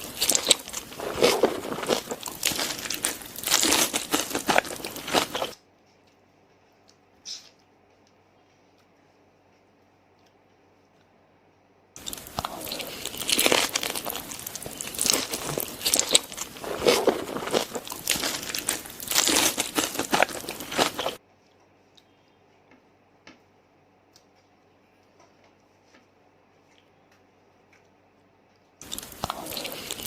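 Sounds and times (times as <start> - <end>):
crunching of crisp fried food: 0.0 - 9.0, 12.0 - 22.1, 27.7 - 30.0.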